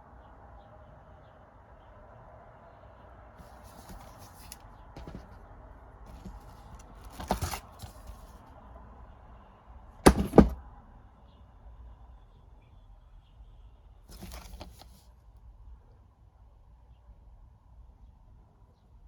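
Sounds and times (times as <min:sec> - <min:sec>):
packaging rustling: 0:03.4 - 0:05.4, 0:06.1 - 0:08.2, 0:10.1 - 0:10.6, 0:14.1 - 0:14.9
plastic cases clacking: 0:03.4 - 0:05.4, 0:06.1 - 0:08.3, 0:10.1 - 0:10.6, 0:14.1 - 0:14.9
sharp knocks: 0:10.1 - 0:10.6.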